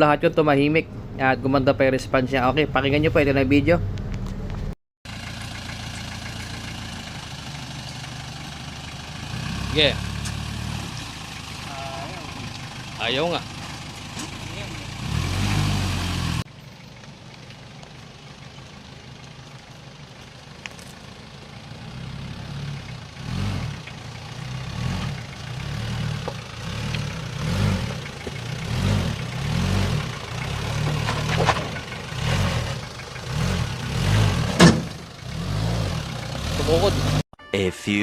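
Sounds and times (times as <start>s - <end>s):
diesel engine knocking: 5.1s - 10.2s, 16.4s - 22.0s, 22.7s - 35.2s.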